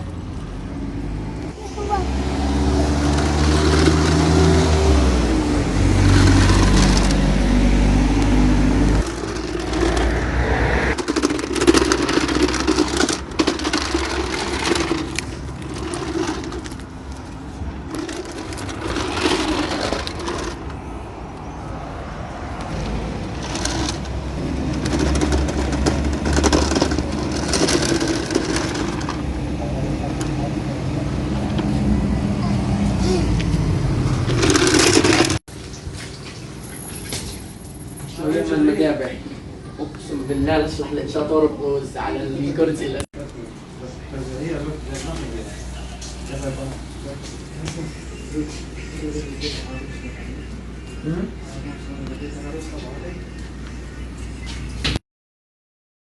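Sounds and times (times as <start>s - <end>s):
car engine hum: 0.0s - 35.7s
street noise: 0.0s - 55.0s.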